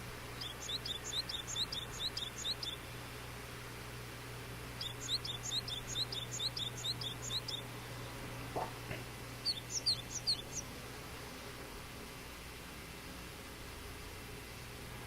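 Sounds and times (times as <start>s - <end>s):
bird chirping: 0.3s - 2.9s, 4.8s - 7.7s, 9.4s - 10.7s.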